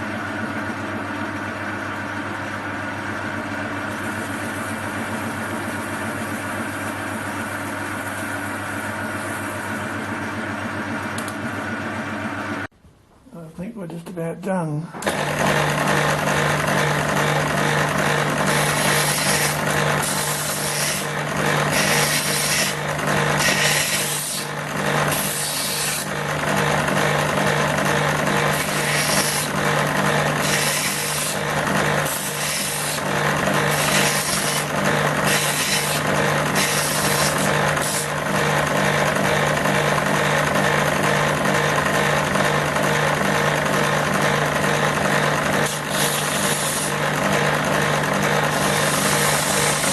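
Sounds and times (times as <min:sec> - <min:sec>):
machine motor humming: 0:00.0 - 0:12.7, 0:14.9 - 0:49.9
brass part rasped with a file: 0:18.5 - 0:21.1, 0:21.7 - 0:22.8, 0:23.4 - 0:24.5, 0:45.7 - 0:46.9, 0:48.6 - 0:49.9.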